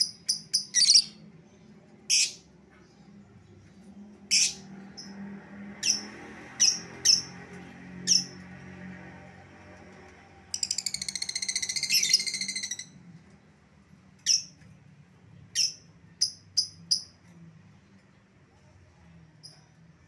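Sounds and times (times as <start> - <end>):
high bird chirps: 0.0 - 1.2, 10.5 - 13.0
lovebird chattering trill: 10.6 - 12.9.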